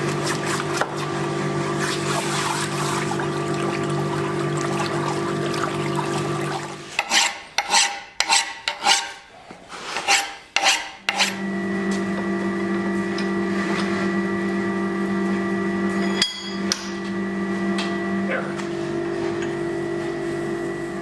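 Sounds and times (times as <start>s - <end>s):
file rasping in quick strokes: 7.0s - 11.4s.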